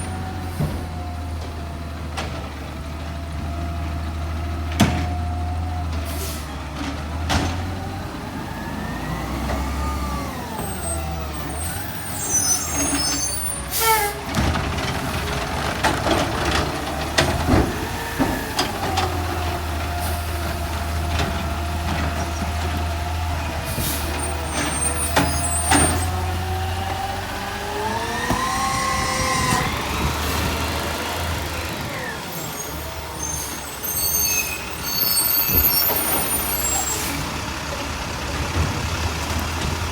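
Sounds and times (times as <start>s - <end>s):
diesel engine idling: 13.4s - 34.0s, 36.1s - 39.9s.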